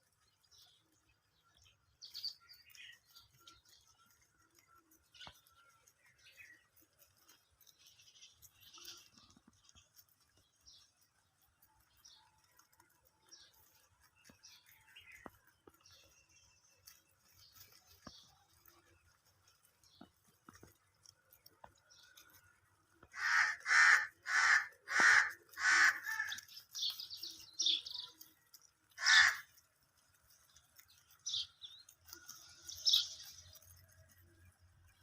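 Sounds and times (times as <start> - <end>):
small birds chirping: 0.0 - 35.0
crow cawing: 23.1 - 26.4, 29.0 - 29.5.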